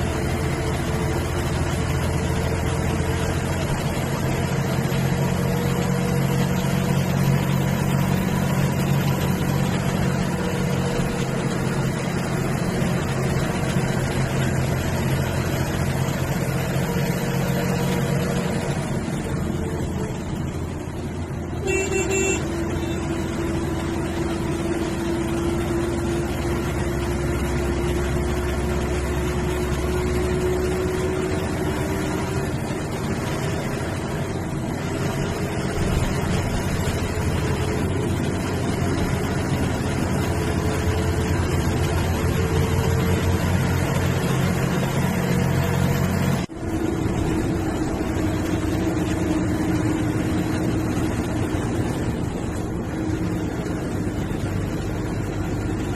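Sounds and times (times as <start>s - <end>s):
bus diesel engine: 0.0s - 55.9s
road noise: 0.0s - 55.9s
horn blast: 21.6s - 23.0s.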